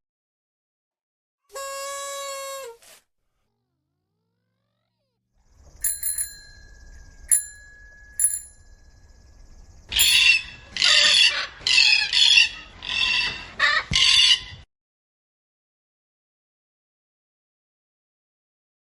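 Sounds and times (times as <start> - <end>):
sharp bell-like dings: 5.8 - 9.0, 10.0 - 10.4
parrot squawking: 9.9 - 14.6.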